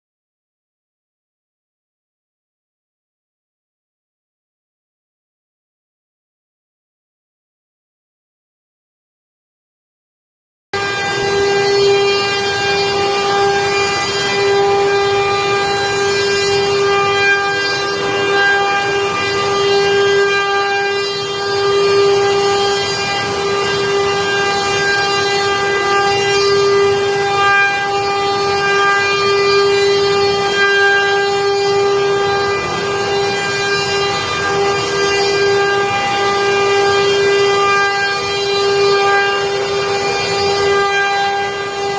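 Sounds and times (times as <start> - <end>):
machine spindle whining while cutting: 10.8 - 41.9.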